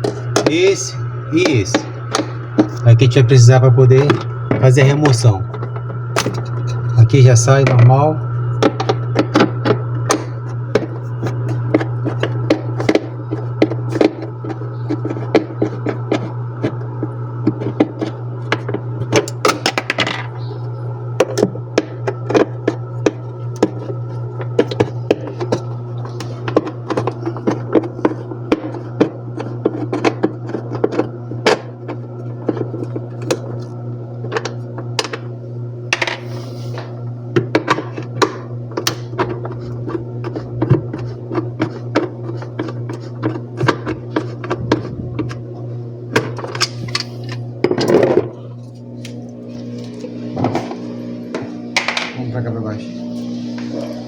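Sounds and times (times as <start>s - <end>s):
steady low hum: 0.0s - 54.0s.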